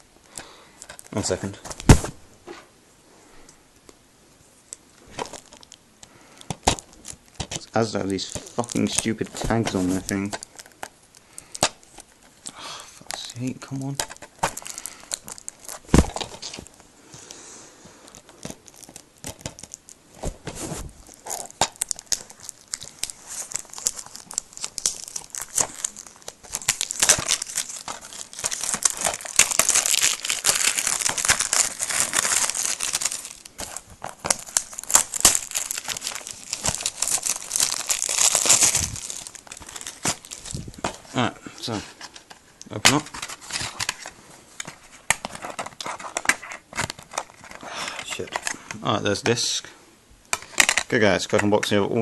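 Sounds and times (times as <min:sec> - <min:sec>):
plastic wrapping crinkling: 0:05.0 - 0:05.8, 0:06.4 - 0:12.5, 0:13.1 - 0:16.9, 0:18.0 - 0:48.6.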